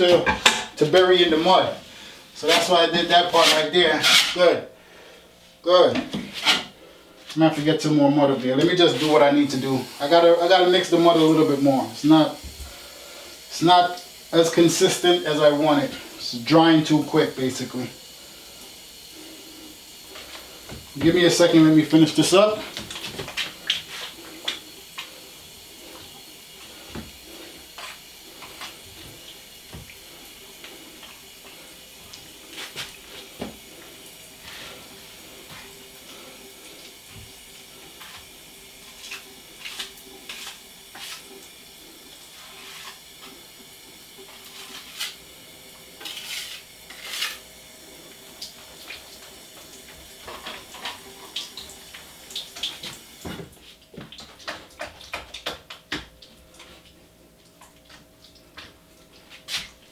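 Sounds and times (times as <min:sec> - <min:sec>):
metal knife scraping a mud pan: 0:02.4 - 0:04.5, 0:06.3 - 0:06.8, 0:46.0 - 0:47.4.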